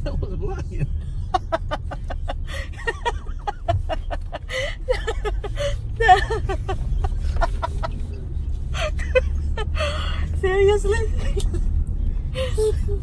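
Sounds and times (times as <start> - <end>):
steady low rumble: 0.0 - 13.0
people talking and chuckling: 0.6 - 9.9.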